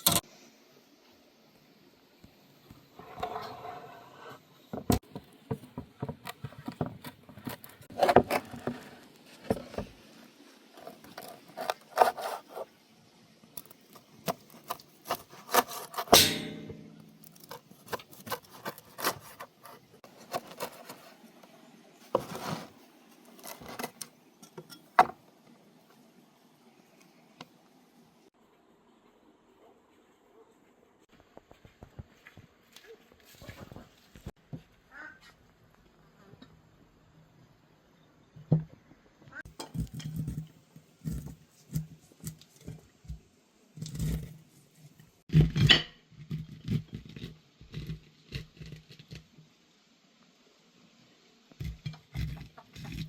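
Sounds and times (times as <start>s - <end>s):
rubbing and scraping: 5.7s - 12.8s, 13.7s - 21.4s, 22.0s - 24.1s.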